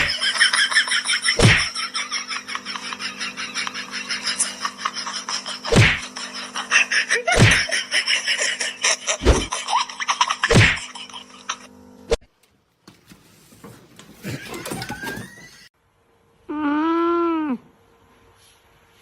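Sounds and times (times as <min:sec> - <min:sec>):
steady hum: 0:00.0 - 0:12.1.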